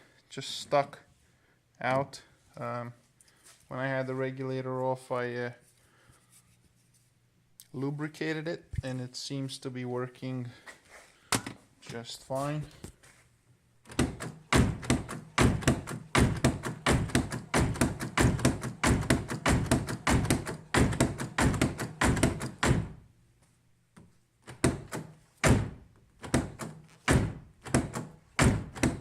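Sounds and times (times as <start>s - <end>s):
car door handle clacking: 13.9s - 23.0s.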